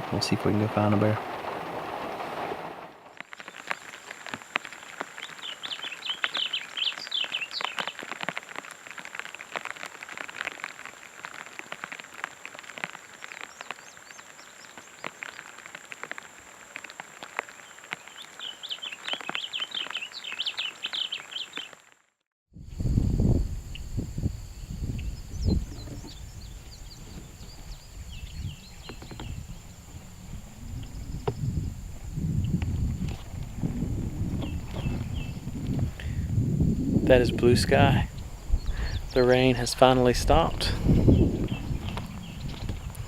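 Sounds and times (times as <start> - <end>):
rain dripping: 0.0 - 21.9, 25.5 - 43.0
songbird chirping: 4.7 - 8.1, 17.6 - 21.8, 23.7 - 35.8, 37.2 - 43.0.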